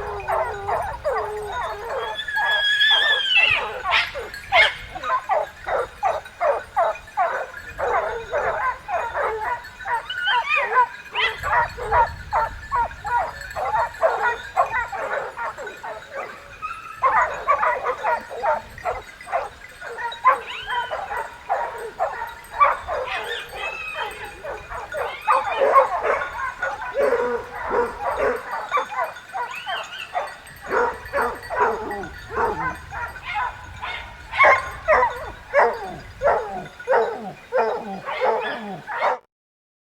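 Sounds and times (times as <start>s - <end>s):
dogs barking: 0.0s - 39.2s.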